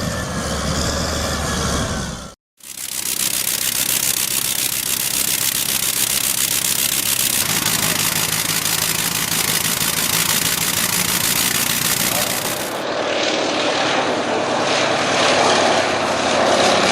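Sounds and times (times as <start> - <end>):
vehicle engine running: 2.6 - 12.8.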